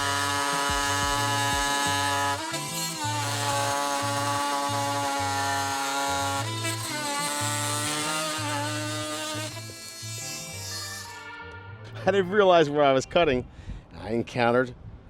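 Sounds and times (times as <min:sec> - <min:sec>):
background music with pulsing bass: 0:00.0 - 0:02.2
multi-tool blade cutting wood: 0:00.0 - 0:11.3.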